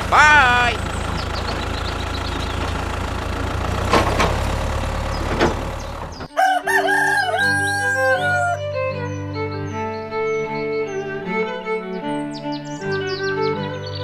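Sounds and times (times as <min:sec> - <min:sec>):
music: 0:06.3 - 0:14.0
crowing-like call: 0:06.4 - 0:08.6.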